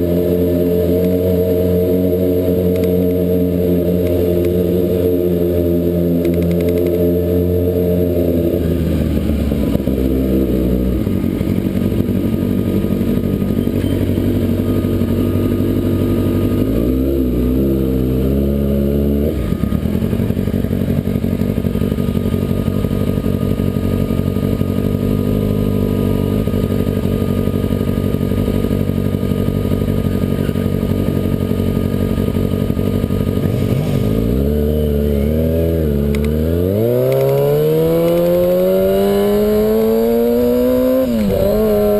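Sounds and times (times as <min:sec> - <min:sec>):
motorcycle engine revving: 0:00.0 - 0:41.9.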